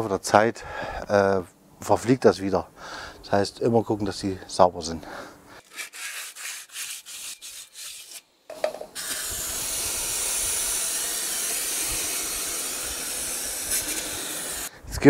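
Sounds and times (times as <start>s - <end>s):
sandpaper rubbing on brake shoes: 5.6s - 8.2s, 9.0s - 14.7s
spray can hissing: 8.9s - 14.7s.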